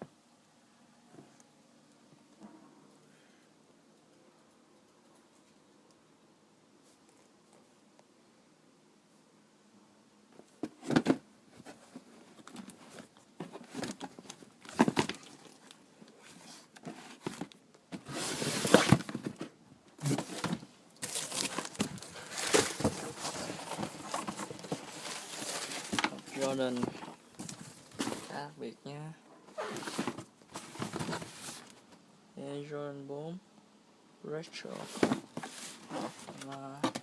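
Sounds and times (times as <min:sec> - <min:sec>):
packing paper rustling: 0:11.0 - 0:28.4, 0:29.6 - 0:31.8.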